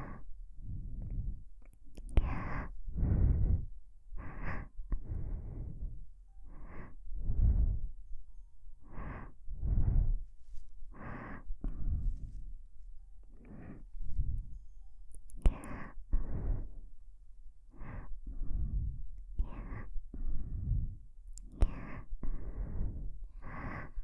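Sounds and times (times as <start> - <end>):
slow breathing into microphone: 2.2 - 8.0, 8.8 - 14.6, 17.7 - 24.0
faint clicks: 15.1 - 15.7.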